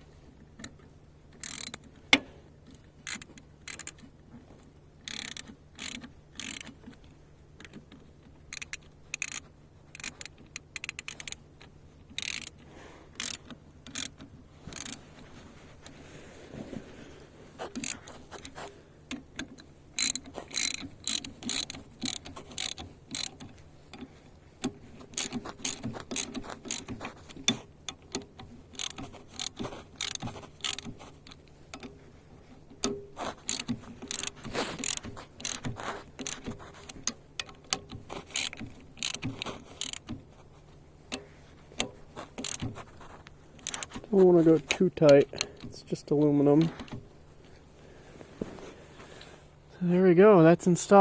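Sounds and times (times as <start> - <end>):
ratchet wrench clicking: 1.4 - 1.9, 3.0 - 4.1, 5.0 - 6.8, 8.5 - 15.0, 17.7 - 31.9, 32.8 - 40.1, 41.1 - 45.7.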